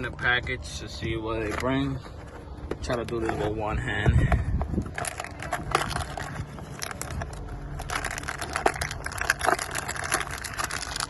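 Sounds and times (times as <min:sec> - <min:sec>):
package crinkling: 0:04.7 - 0:11.0.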